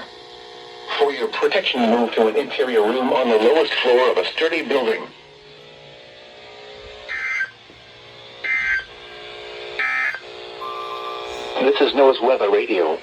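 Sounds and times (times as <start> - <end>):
faint radio hum: 0.8 - 5.2, 9.8 - 13.0
shrill digital data bursts: 7.1 - 7.6, 9.8 - 12.4.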